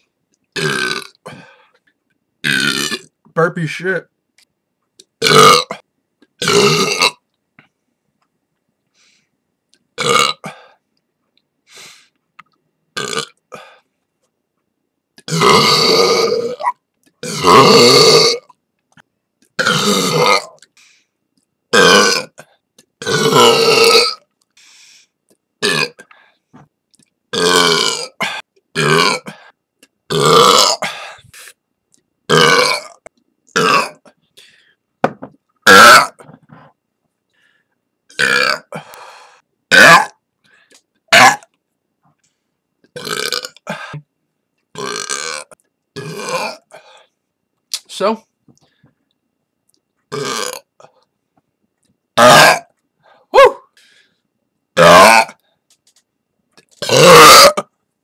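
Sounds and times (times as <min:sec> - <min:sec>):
person burping: 0:00.6 - 0:01.5, 0:02.4 - 0:03.1, 0:05.2 - 0:07.2, 0:10.0 - 0:10.7, 0:13.0 - 0:13.7, 0:15.2 - 0:18.6, 0:19.6 - 0:20.6, 0:21.7 - 0:24.2, 0:25.6 - 0:26.1, 0:27.3 - 0:29.5, 0:30.1 - 0:31.2, 0:32.3 - 0:34.2, 0:35.6 - 0:36.6, 0:38.1 - 0:39.0, 0:39.7 - 0:40.2, 0:41.1 - 0:41.5, 0:43.0 - 0:44.1, 0:44.8 - 0:46.8, 0:50.1 - 0:50.8, 0:52.2 - 0:52.7, 0:54.8 - 0:55.4, 0:56.8 - 0:57.7.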